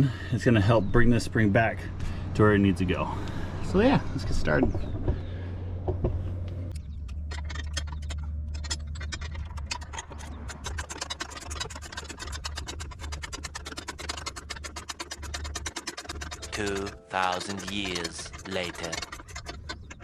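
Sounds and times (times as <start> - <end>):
steady low hum: 0.0 - 20.0
sharp regular clicks: 5.8 - 20.0.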